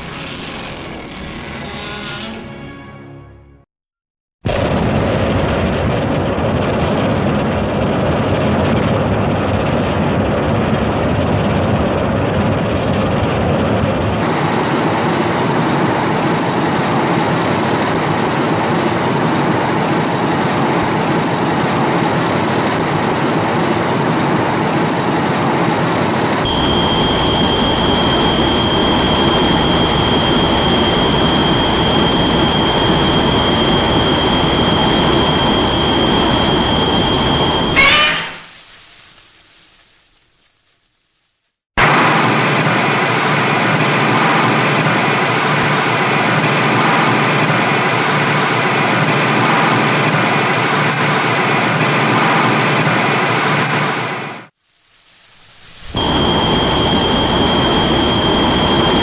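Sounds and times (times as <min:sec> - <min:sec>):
loud rushing rumble: 0:04.5 - 0:19.0
steady high whine: 0:04.5 - 0:39.4, 0:54.9 - 0:59.0.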